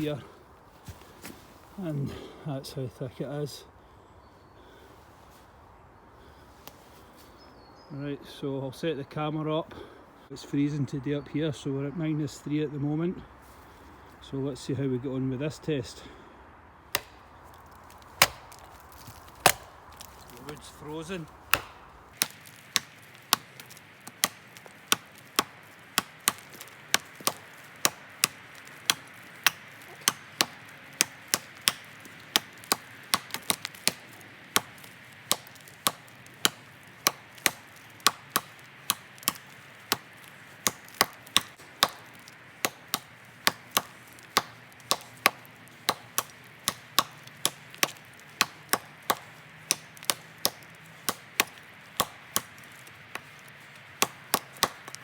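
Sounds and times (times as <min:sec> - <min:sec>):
knife chopping into tree trunk: 0:16.9 - 0:55.0.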